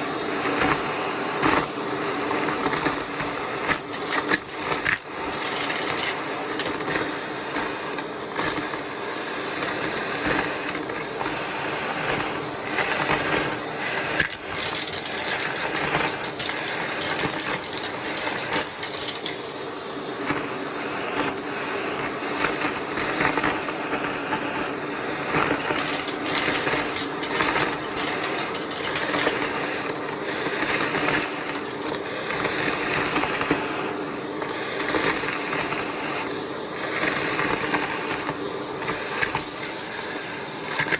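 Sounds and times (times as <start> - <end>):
vacuum cleaner motor hum: 0.0 - 40.9
debris crackling through vacuum: 2.6 - 8.8, 9.7 - 20.6, 25.0 - 33.4.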